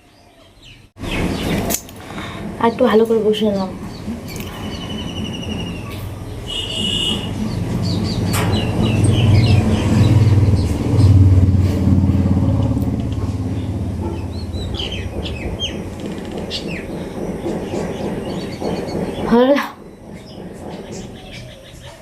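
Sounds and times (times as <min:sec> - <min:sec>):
birds chirping: 0:00.0 - 0:22.0
passing vehicle engine: 0:03.7 - 0:18.7.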